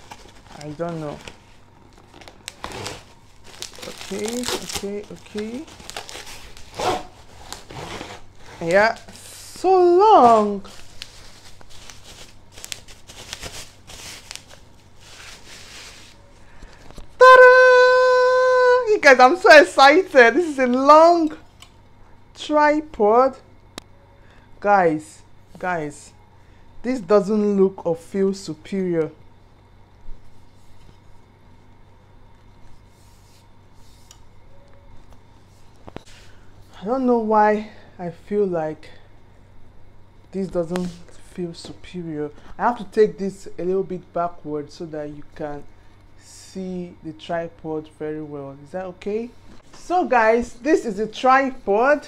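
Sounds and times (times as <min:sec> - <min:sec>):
packaging rustling and crinkling: 0:00.0 - 0:09.2, 0:10.1 - 0:17.2
faint rubbing and handling noises: 0:00.0 - 0:17.1, 0:30.0 - 0:36.8.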